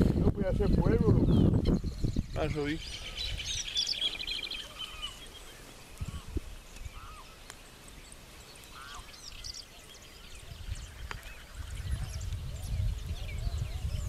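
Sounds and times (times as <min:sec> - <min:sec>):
bird trill: 0:01.2 - 0:07.4, 0:08.0 - 0:14.0
short bird calls: 0:02.7 - 0:14.0.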